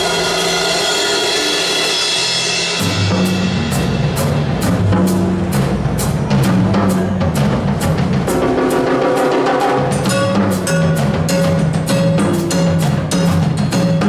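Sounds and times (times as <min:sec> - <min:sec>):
drum kit steady beat: 0:00.0 - 0:14.0
low held bass notes: 0:02.8 - 0:09.0, 0:09.8 - 0:14.0.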